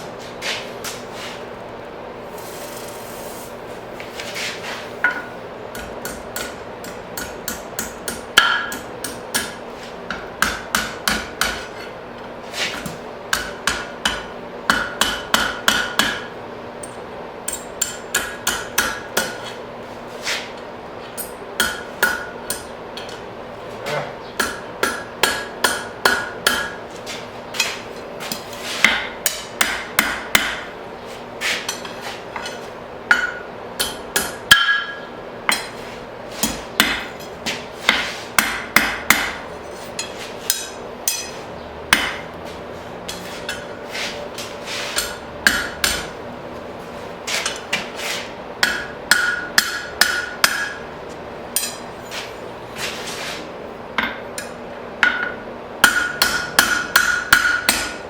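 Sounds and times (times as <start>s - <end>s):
steady hum: 0.0s - 58.0s
hammer striking steel on anvil: 5.0s - 11.9s, 12.8s - 19.5s, 21.2s - 23.2s, 24.4s - 26.8s, 27.6s - 30.7s, 31.6s - 35.8s, 36.4s - 42.3s, 43.1s - 43.8s, 44.4s - 46.2s, 48.6s - 50.9s, 51.5s - 52.3s, 54.0s - 58.0s.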